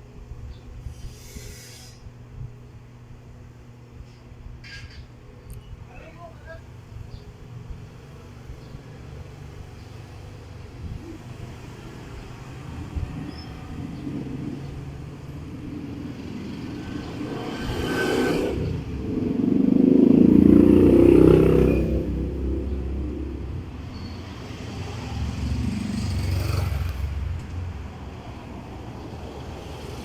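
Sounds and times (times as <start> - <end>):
passing vehicle engine rumble: 6.0 - 30.0.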